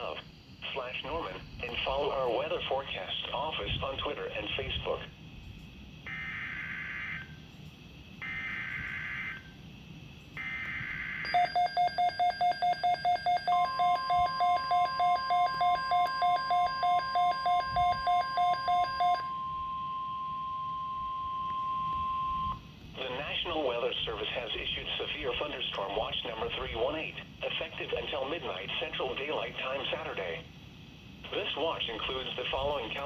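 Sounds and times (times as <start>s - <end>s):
steady warning alarm tone: 0.0s - 3.7s, 5.5s - 27.2s
receiver alert beeping: 10.4s - 23.4s.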